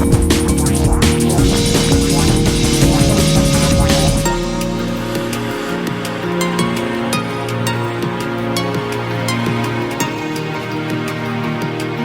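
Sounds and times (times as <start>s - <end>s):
electronic music with synth and beat: 0.0s - 12.0s.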